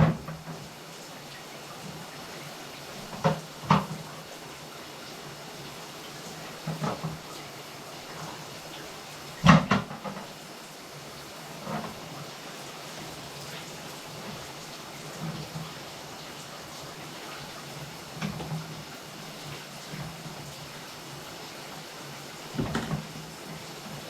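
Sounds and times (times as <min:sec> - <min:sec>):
hard objects knocking and clunking: 0:09.4 - 0:10.3, 0:22.6 - 0:23.2.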